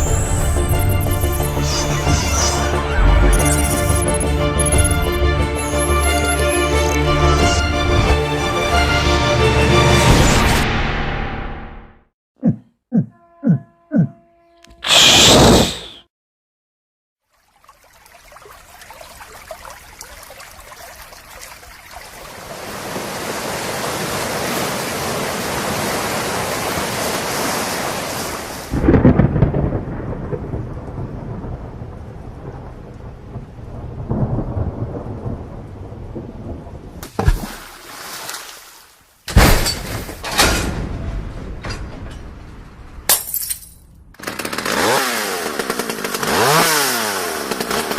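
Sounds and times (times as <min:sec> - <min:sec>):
thunder rumbling: 0:28.7 - 0:37.0.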